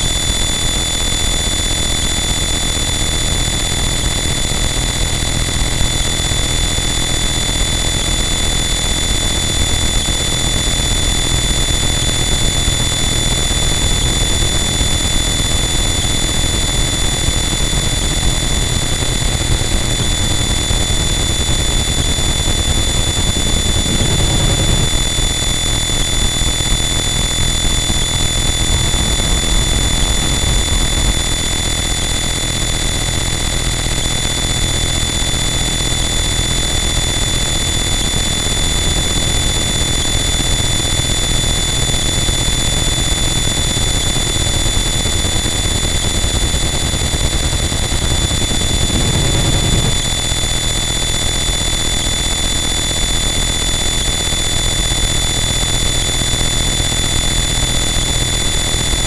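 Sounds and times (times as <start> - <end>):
dense distorted noise wall: 18.9 - 35.2.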